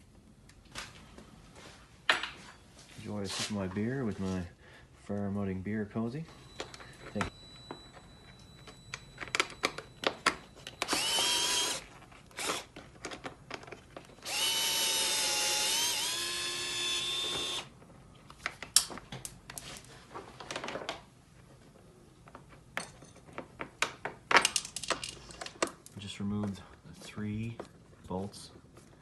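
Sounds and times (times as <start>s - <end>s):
drill motor whine: 10.8s - 11.8s, 12.4s - 12.7s, 14.2s - 17.7s
tools and hardware clinking: 22.4s - 23.6s, 24.3s - 25.7s.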